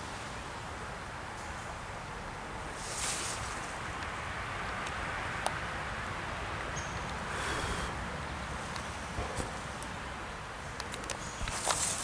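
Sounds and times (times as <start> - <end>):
brief rustle: 10.8 - 12.0.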